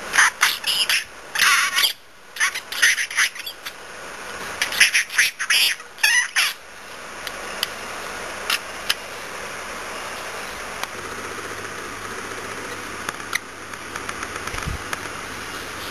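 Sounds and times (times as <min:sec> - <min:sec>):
steady background noise: 0:00.0 - 0:15.9
budgerigar chirping and squawking: 0:05.6 - 0:06.6.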